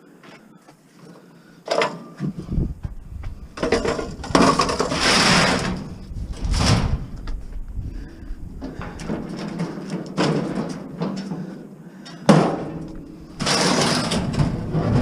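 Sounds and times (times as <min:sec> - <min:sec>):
scrap metal scraping and clunking: 0:03.3 - 0:07.4, 0:08.6 - 0:11.6, 0:12.3 - 0:15.0.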